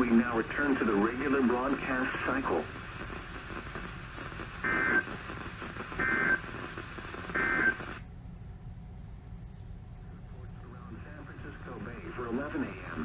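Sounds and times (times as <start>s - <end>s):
background hiss: 0.0s - 8.1s.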